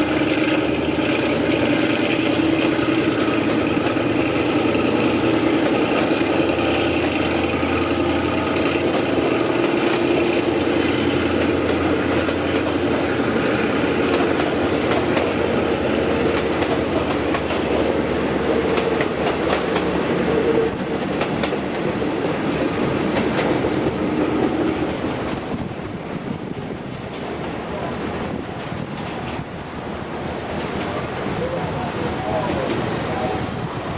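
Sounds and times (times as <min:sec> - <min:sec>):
train wheels clicking over rail joints: 0:00.0 - 0:33.9.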